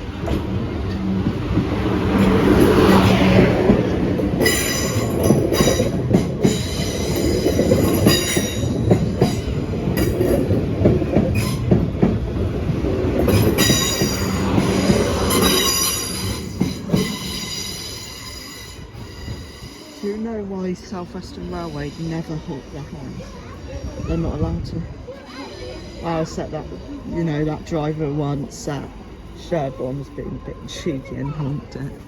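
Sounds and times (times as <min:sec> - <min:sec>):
train rumbling past: 0:00.0 - 0:32.0
train wheels squealing: 0:13.6 - 0:20.2.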